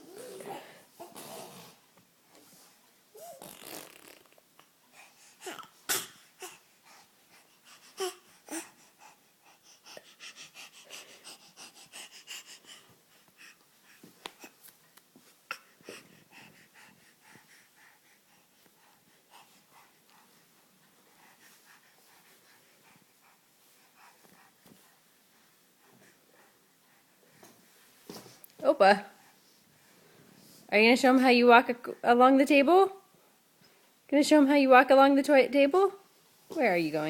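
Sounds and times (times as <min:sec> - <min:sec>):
pet breathy noises: 0:04.9 - 0:14.6, 0:15.5 - 0:27.7.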